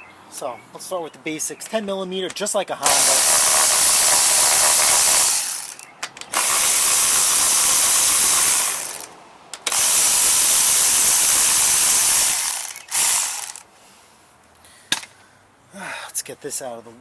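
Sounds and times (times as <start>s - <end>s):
ratchet wrench running: 2.8s - 13.7s.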